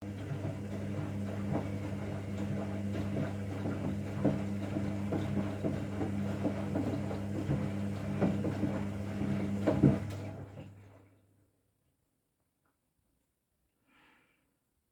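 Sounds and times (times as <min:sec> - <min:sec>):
washing machine motor hum: 0:00.0 - 0:11.1.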